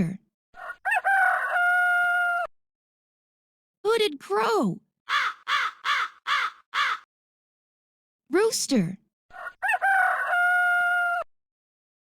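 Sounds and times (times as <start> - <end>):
rooster crowing: 0.6 - 2.5, 5.1 - 7.0, 9.3 - 11.3
crow cawing: 5.1 - 7.1.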